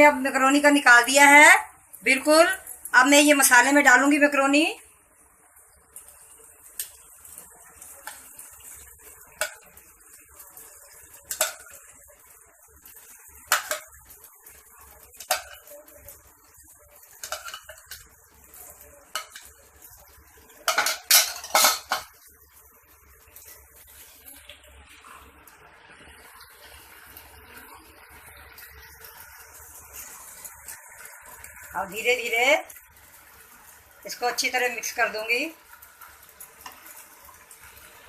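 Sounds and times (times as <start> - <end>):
metal spoon scraping a pan: 15.1 - 15.8, 17.1 - 18.1, 20.6 - 22.2.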